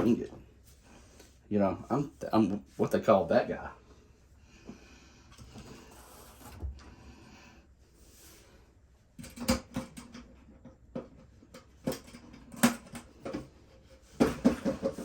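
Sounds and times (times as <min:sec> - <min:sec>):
hand tools clicking and clattering: 0:14.1 - 0:15.0.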